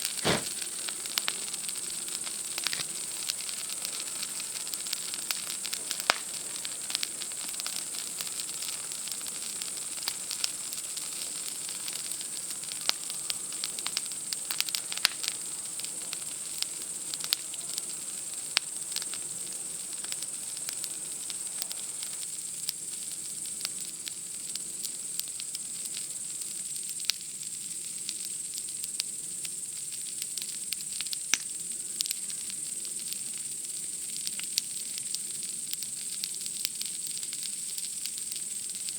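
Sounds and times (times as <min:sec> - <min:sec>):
campfire crackling and popping: 0:00.0 - 0:38.9
night insects chorus: 0:00.2 - 0:26.6.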